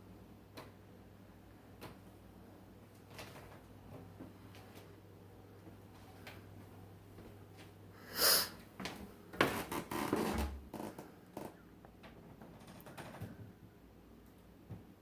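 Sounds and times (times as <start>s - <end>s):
short hiss: 8.0s - 8.6s.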